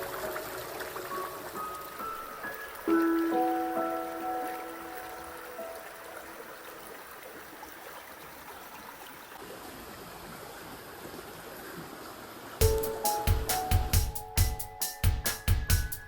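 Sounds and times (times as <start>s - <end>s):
river water rushing: 0.0s - 11.5s
background music with drums: 12.6s - 16.0s.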